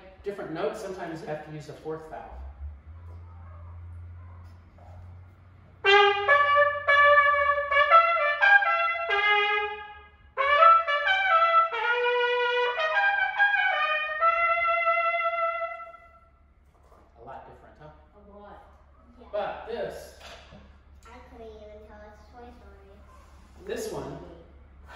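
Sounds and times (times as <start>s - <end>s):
trumpet playing short phrases: 5.8s - 16.0s.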